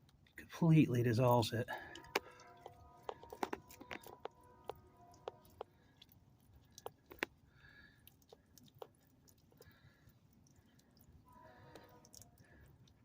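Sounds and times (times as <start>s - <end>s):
water dribbling: 0.3s - 13.0s
crackling and ticking: 1.7s - 13.0s.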